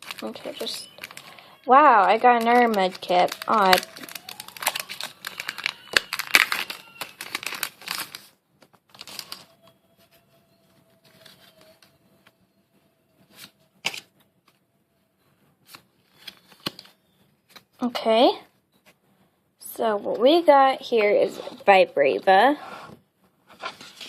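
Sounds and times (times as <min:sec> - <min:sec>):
foil wrapper crinkling: 0:00.0 - 0:08.3, 0:08.9 - 0:09.8.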